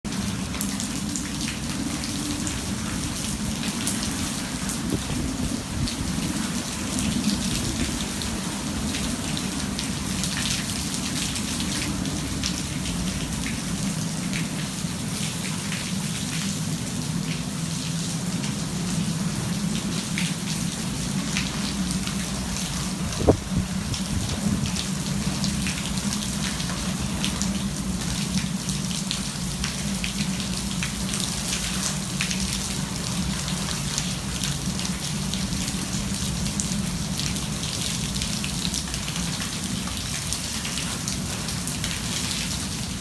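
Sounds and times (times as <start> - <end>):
heavy rain falling: 0.1 - 43.0
steady low rumble: 22.4 - 24.8.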